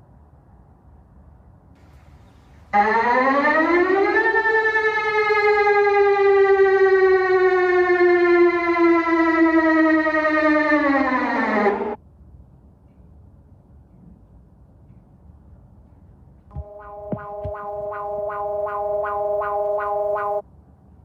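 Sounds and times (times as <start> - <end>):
alert siren rising: 2.8 - 12.0, 16.5 - 20.4.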